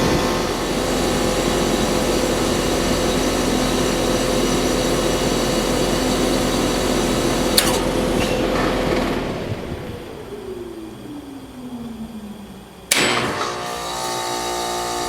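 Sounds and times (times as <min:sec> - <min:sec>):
heat pump humming: 0:00.0 - 0:15.0
sharp click: 0:12.9 - 0:13.6.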